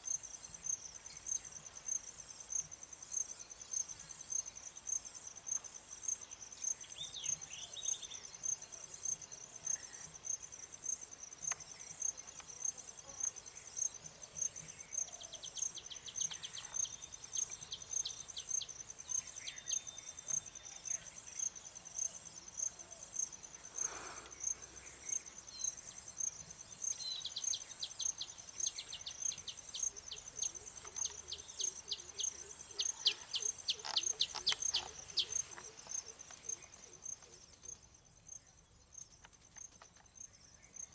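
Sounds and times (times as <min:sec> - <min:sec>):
cricket chirping: 0:00.0 - 0:40.9
birds ticking chatter: 0:26.9 - 0:40.9.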